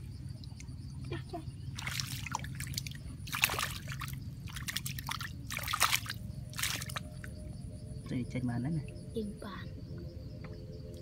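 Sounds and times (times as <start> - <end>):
water sloshing and splashing: 0.0 - 7.4
steady low hum: 0.0 - 11.0.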